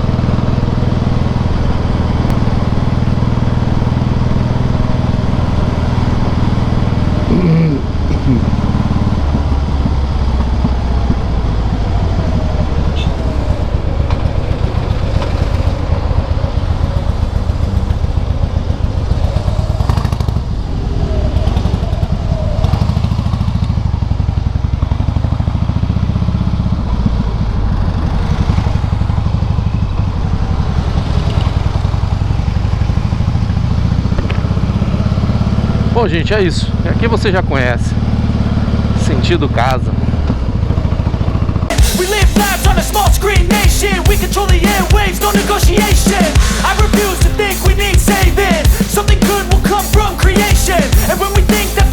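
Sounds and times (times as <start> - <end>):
motorcycle exhaust rumble: 0.0 - 20.7, 21.6 - 39.2.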